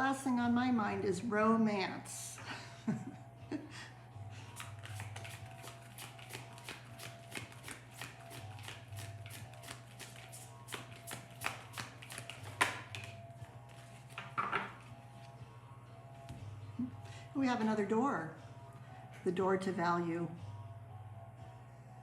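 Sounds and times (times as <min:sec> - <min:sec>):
soft background music: 0:00.0 - 0:22.0
cards being shuffled: 0:04.6 - 0:15.3.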